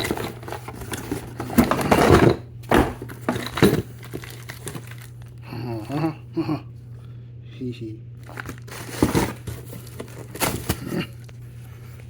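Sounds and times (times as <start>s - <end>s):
packaging rustling and crinkling: 0.0s - 5.3s, 8.2s - 11.4s.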